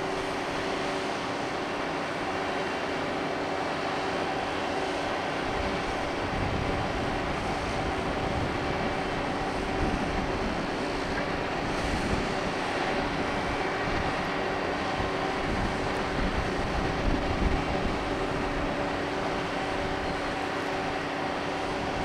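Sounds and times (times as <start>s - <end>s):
ship machinery hum: 0.0s - 22.0s
wind rumbling on microphone: 5.0s - 22.0s.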